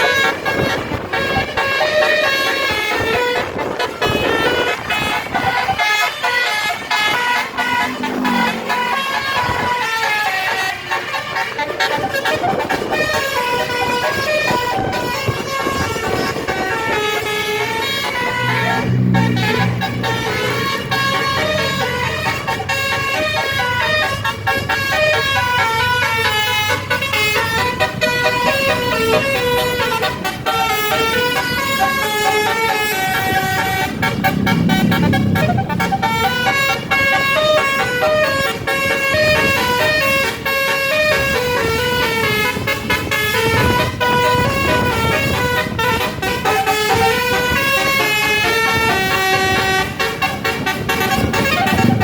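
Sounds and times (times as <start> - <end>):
low vehicle rumble: 0.0 - 52.0
musical bus air horn melody: 0.0 - 52.0.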